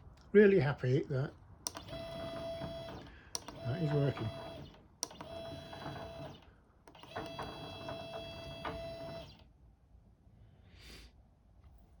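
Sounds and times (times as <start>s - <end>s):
stepper motors whining: 1.7s - 9.4s.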